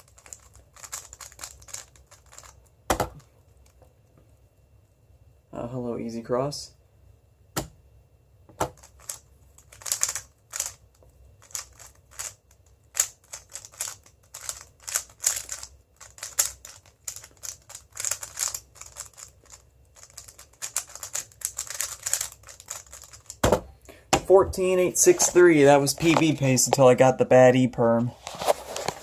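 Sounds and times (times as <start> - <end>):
plastic puzzle cube clacking: 0.0 - 3.3, 8.7 - 10.8, 11.4 - 23.4.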